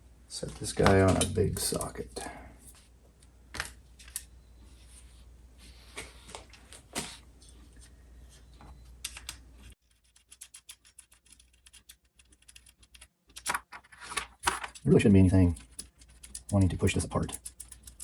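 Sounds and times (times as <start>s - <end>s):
metal parts and tools clicking: 15.6s - 18.0s.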